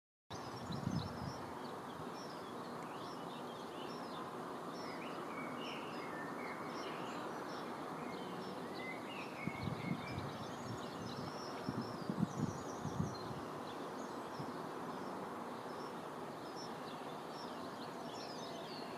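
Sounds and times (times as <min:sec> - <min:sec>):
birds chirping: 0:00.3 - 0:18.9
outdoor background hiss: 0:00.3 - 0:18.9.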